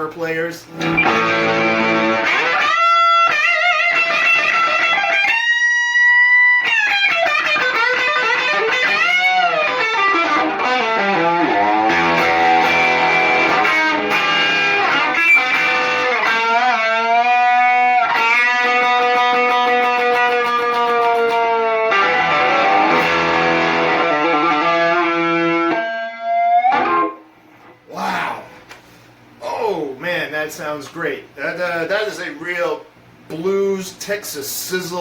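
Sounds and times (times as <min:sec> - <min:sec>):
overdriven electric guitar riffs: 0:00.7 - 0:27.9.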